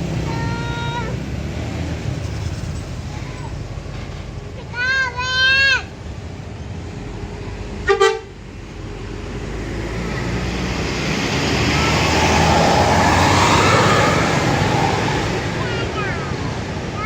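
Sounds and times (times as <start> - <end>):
bus engine and tyre noise: 0.0 - 17.0
double horn toot: 7.8 - 8.4.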